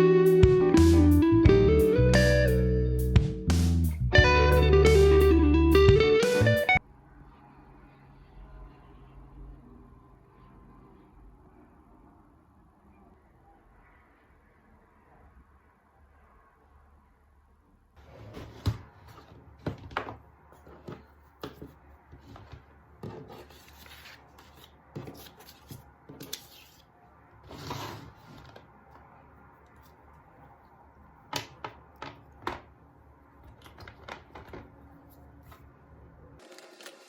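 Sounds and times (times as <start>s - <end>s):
scraping or rustling: 18.0s - 19.9s, 20.5s - 28.8s.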